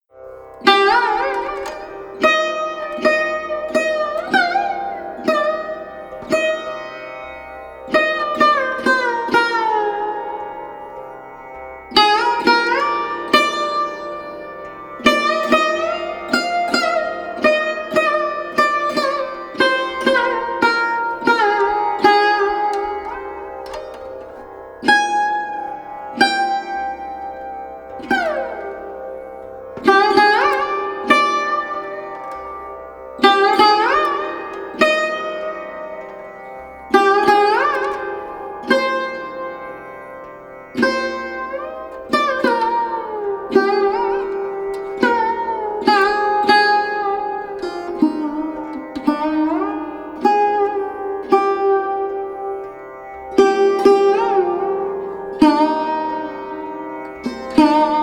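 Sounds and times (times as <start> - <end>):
plucked string instrument melody: 0.0 - 58.0.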